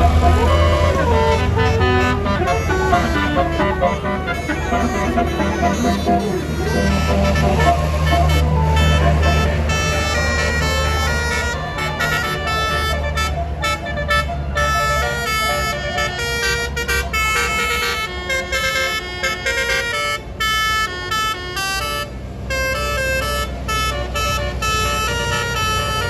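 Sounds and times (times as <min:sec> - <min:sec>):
bus engine rumble: 0:00.0 - 0:26.0
bus horn playing a tune: 0:00.0 - 0:26.0.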